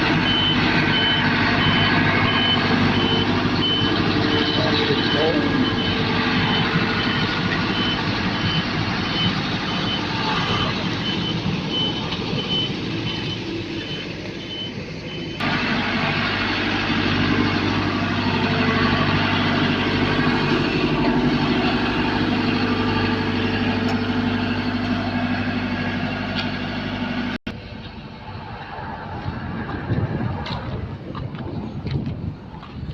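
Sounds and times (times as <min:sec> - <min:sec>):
reversing alarm beeping: 0:00.0 - 0:16.1
diesel engine drone: 0:00.0 - 0:32.9.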